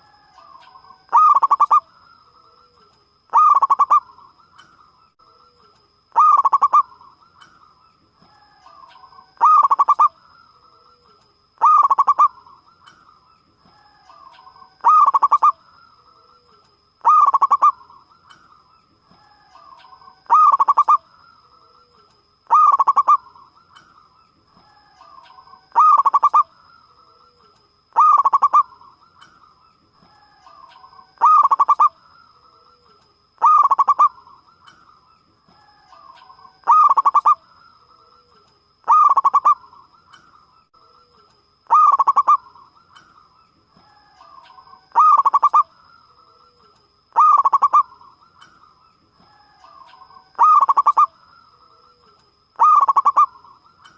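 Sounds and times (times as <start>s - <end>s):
dove cooing: 0.1s - 1.9s, 2.5s - 4.3s, 5.5s - 7.1s, 8.4s - 10.2s, 11.0s - 12.6s, 13.8s - 15.6s, 16.4s - 18.0s, 19.3s - 21.0s, 21.9s - 23.4s, 24.6s - 26.5s, 27.3s - 28.9s, 30.0s - 32.0s, 32.7s - 34.5s, 35.6s - 37.4s, 38.8s - 39.8s, 41.7s - 42.8s, 43.9s - 45.7s, 46.4s - 48.1s, 49.4s - 51.2s, 52.6s - 53.6s.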